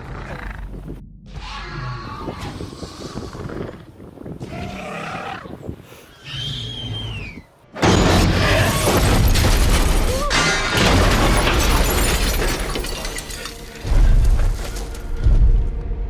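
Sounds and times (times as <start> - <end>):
loud crashing din: 7.8 - 15.5
action film music: 13.7 - 16.0.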